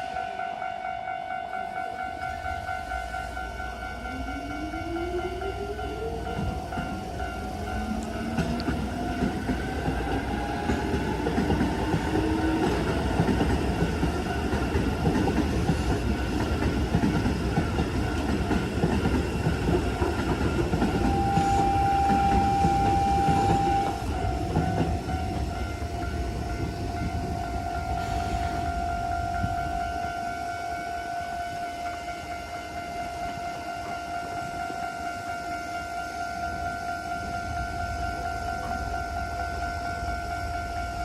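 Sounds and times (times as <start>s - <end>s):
crossing warning bell ringing: 0.0s - 41.0s
train wheels clattering on rails: 2.1s - 30.8s.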